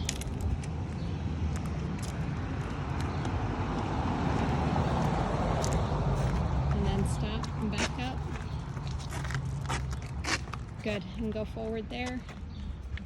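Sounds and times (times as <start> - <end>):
car tyres rushing on road: 1.3 - 8.1.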